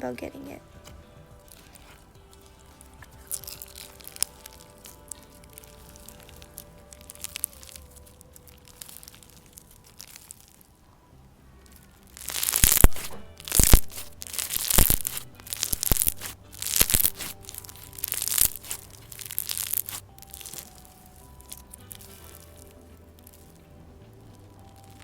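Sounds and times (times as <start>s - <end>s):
faint background music: 0.0s - 25.0s
slime crunching and popping: 1.5s - 10.8s, 11.7s - 23.6s.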